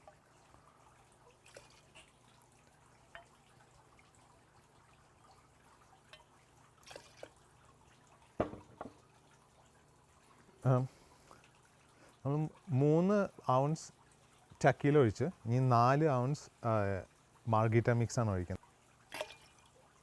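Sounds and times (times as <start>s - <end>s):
liquid trickling and dripping: 0.0s - 20.0s
sharp knock: 8.4s - 8.9s.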